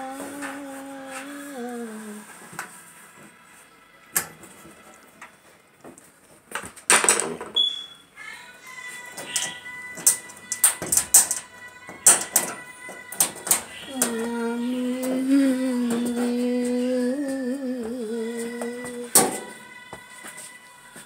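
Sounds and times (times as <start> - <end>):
person singing a held note: 0.0 - 2.4, 13.8 - 19.6
parts knocking and clattering: 6.5 - 7.6, 9.4 - 14.2.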